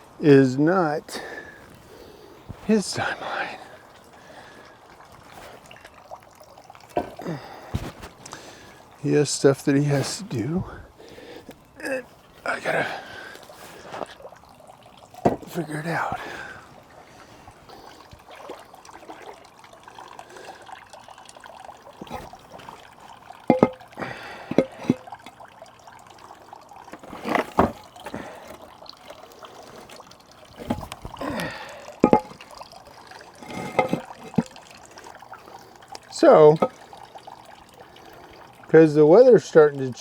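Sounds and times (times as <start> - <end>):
water trickling: 0.0 - 40.0
rocks knocking together: 6.9 - 8.4, 15.2 - 15.6, 23.5 - 25.0, 30.6 - 32.4.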